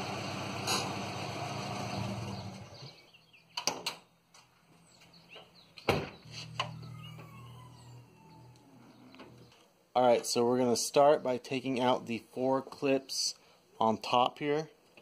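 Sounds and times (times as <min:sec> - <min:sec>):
sharp clicks and knocks: 0:03.6 - 0:04.5.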